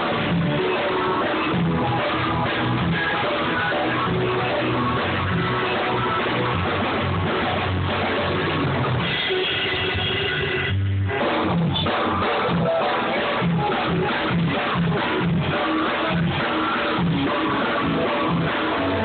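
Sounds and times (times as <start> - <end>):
instrumental rock band music: 0.0 - 19.0.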